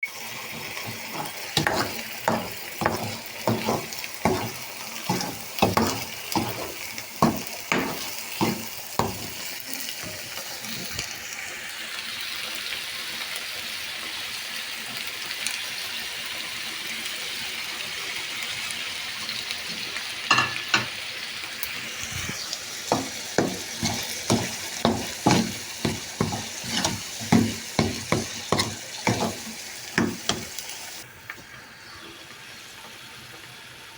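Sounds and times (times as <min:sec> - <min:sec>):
food sizzling in a pan: 0:00.0 - 0:33.9
utensil stirring and scraping pan: 0:00.3 - 0:10.2, 0:22.0 - 0:31.0.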